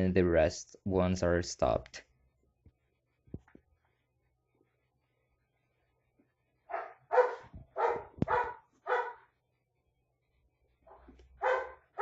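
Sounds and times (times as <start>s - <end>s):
dog barking: 6.7s - 9.4s, 10.9s - 12.0s.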